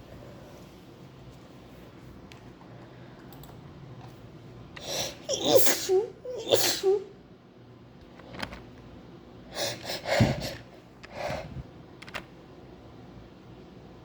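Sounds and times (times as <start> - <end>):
woman breathing hard and sniffing: 9.5 - 11.7.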